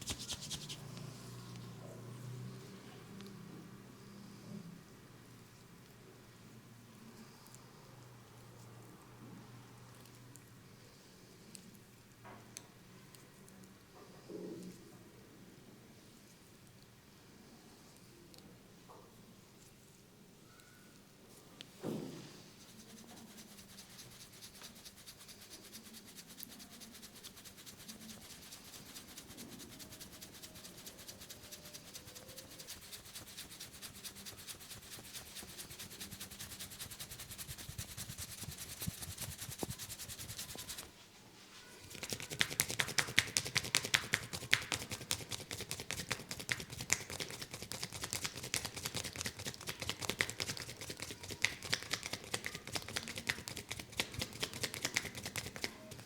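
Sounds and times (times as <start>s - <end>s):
fingers rubbing scalp: 0.0s - 1.2s, 22.6s - 40.9s, 41.9s - 56.0s
fingertips tapping on head: 41.9s - 56.0s.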